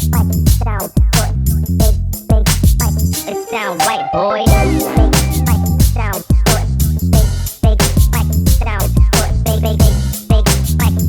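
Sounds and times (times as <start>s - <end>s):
hip hop backing track: 0.0s - 11.0s
person singing: 3.2s - 6.6s.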